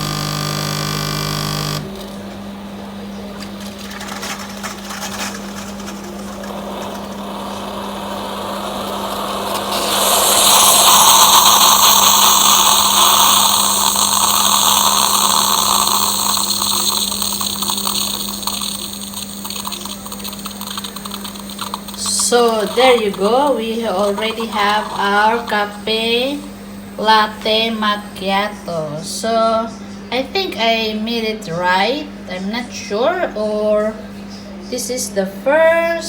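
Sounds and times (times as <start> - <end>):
coffee machine pump humming: 0.0 - 31.0
hiss of hot water and steam: 6.6 - 27.9.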